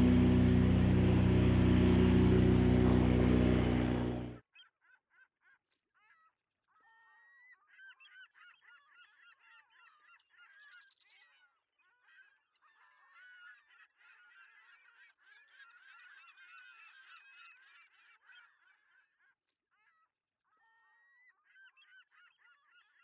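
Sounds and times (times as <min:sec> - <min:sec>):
flock of waterbirds calling: 0:00.0 - 0:04.4.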